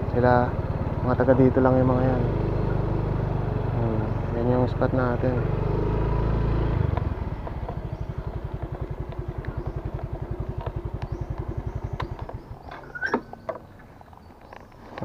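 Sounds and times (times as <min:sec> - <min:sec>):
motorcycle engine idling: 0:00.0 - 0:15.0
sharp clicks: 0:10.6 - 0:15.0.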